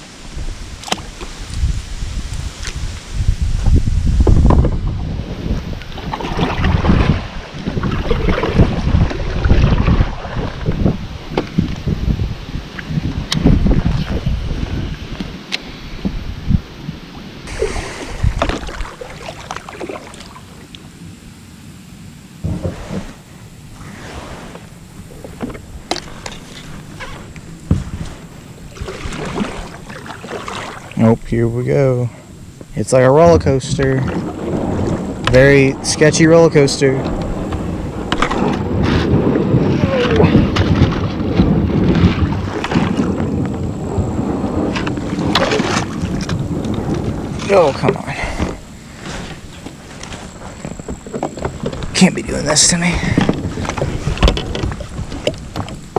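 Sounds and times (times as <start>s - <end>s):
wind rumbling on microphone: 0.0s - 55.9s
water splashes: 4.3s - 12.0s, 17.1s - 21.2s, 22.4s - 31.9s, 32.7s - 55.9s.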